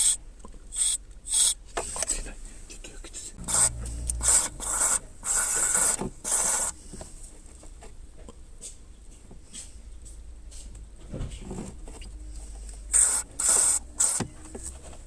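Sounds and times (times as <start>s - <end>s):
spray can hissing: 3.5s - 6.7s, 12.9s - 14.3s.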